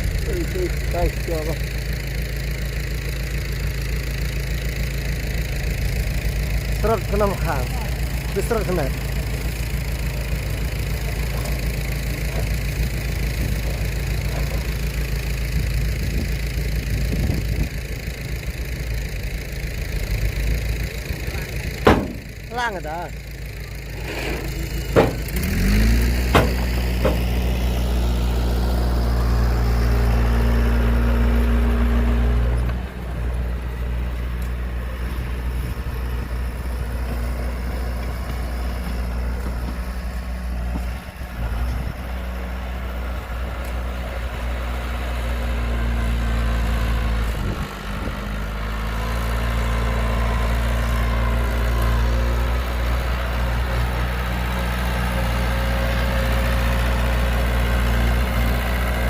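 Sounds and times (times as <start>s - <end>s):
heavy diesel engine running: 0.0s - 59.0s
sharp knock: 21.8s - 22.3s, 26.3s - 27.4s.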